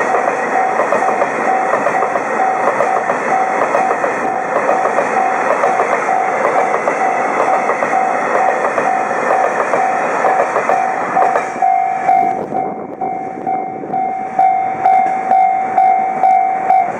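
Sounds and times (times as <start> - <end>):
clacks: 0.0 - 11.6
freight train passing on rails: 0.0 - 16.9.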